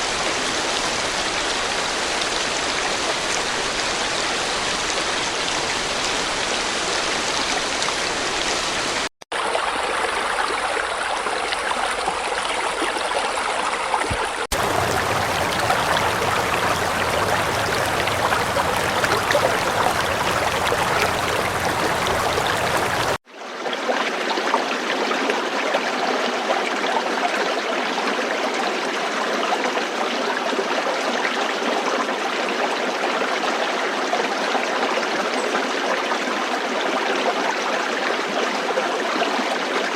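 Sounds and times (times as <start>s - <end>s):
running water flowing: 14.0s - 23.2s.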